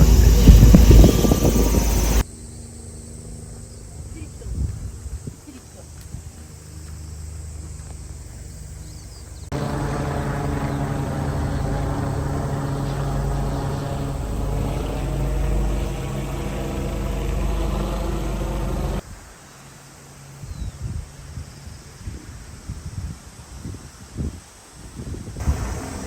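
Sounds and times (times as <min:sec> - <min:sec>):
engine drone: 0:00.0 - 0:03.9, 0:09.4 - 0:19.0, 0:25.4 - 0:26.0.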